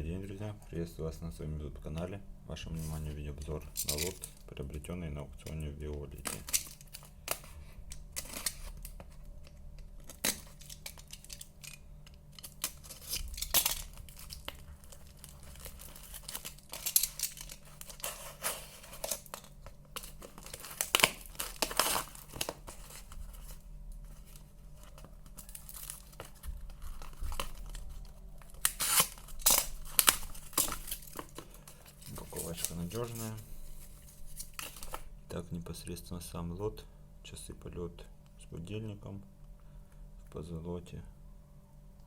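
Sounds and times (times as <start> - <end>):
packaging tearing and crinkling: 3.7 - 4.4, 6.1 - 35.1.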